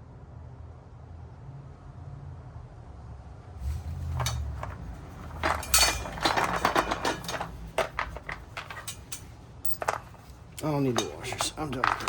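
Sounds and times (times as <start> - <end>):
metal washers and bolts clinking: 3.6 - 12.0.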